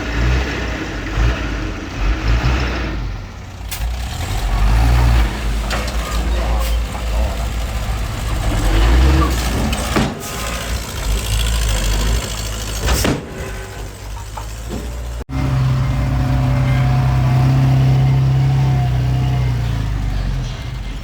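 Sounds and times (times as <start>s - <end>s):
diesel engine of heavy machinery: 0.0s - 21.0s.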